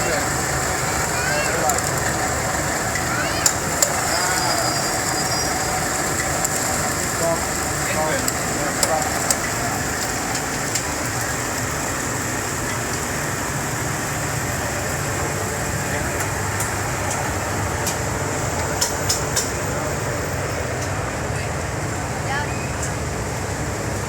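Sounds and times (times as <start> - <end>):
hot oil sizzling over chicken: 0.0 - 17.5.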